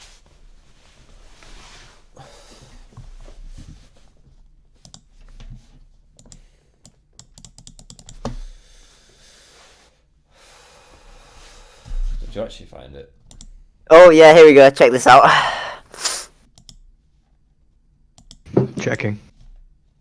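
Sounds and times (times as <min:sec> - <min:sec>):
loud thump: 0:18.5 - 0:19.0.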